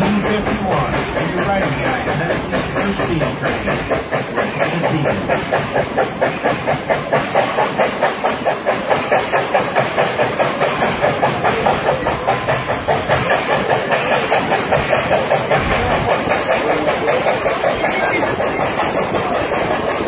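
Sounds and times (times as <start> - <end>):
steam hissing: 0.0 - 20.0
steam locomotive chuffing: 0.0 - 20.0.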